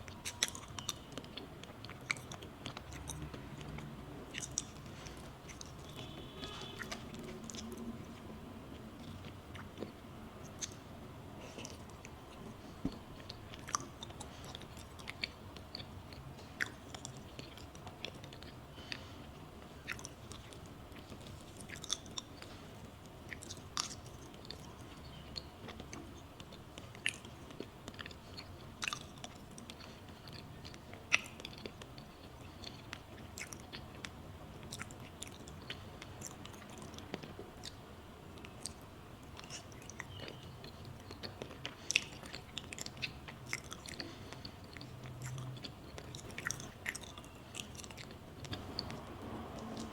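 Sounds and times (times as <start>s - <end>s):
close chewing: 0.0s - 49.9s
wet mouth clicks and smacks: 0.1s - 7.9s, 9.0s - 10.8s, 23.3s - 37.8s, 38.4s - 49.9s.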